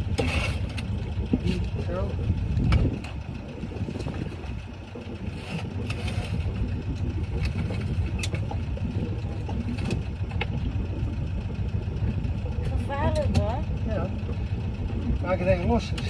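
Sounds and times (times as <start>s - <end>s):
boat engine rumbling: 0.0s - 16.0s.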